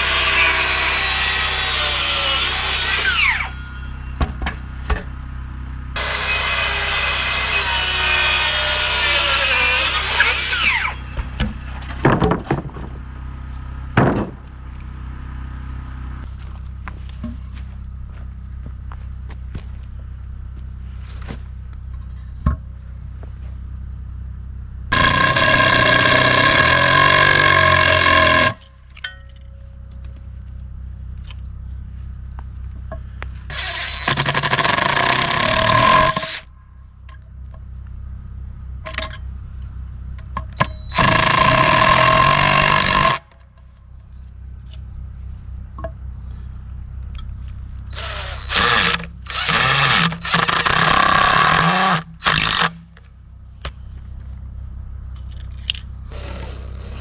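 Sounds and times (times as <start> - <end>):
steady low hum: 0.6 - 7.6, 10.6 - 57.0
power tool running in bursts: 24.9 - 28.6, 33.5 - 36.4, 40.9 - 43.2, 47.9 - 52.8.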